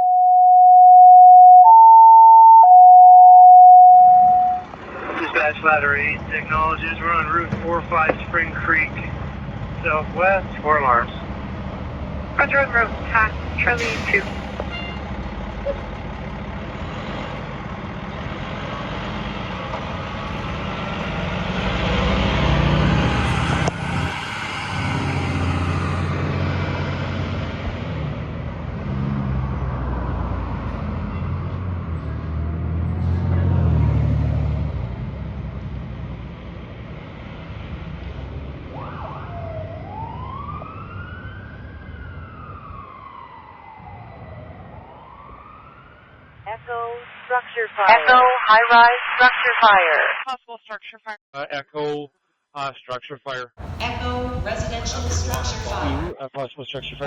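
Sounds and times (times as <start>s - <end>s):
radio alert tones: 0.0s - 4.6s, 46.5s - 50.5s, 53.6s - 56.1s
truck engine running under load: 11.2s - 23.9s, 53.6s - 56.1s.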